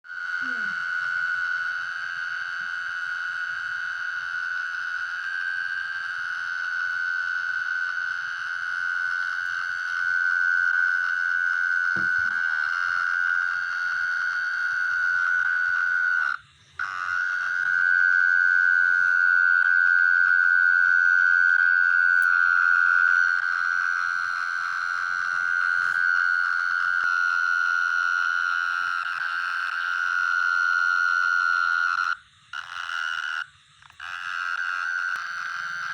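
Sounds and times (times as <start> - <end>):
high-pitched animal trill: 0.1 - 3.4, 23.4 - 27.6, 34.0 - 35.9.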